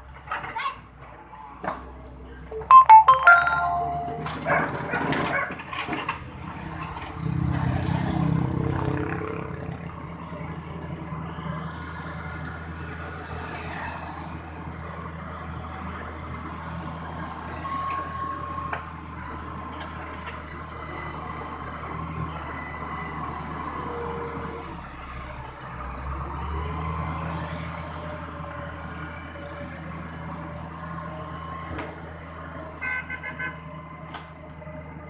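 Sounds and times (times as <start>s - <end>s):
heavy trucks running: 0.0s - 8.1s.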